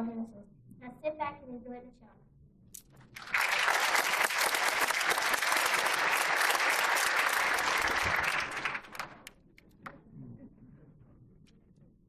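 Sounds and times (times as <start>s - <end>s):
audience applauding: 3.1s - 9.3s.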